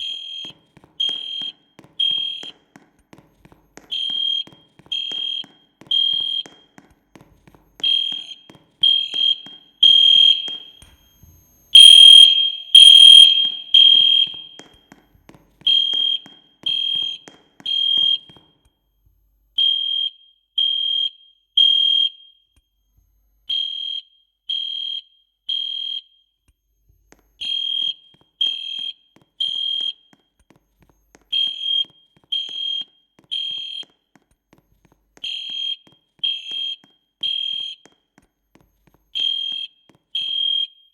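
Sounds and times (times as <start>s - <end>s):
fire alarm beeping: 0.0s - 2.5s, 3.9s - 6.7s, 7.8s - 14.6s, 15.7s - 18.3s, 19.6s - 22.5s, 23.5s - 26.3s, 27.4s - 30.1s, 31.4s - 34.0s, 35.2s - 38.1s, 39.2s - 40.9s.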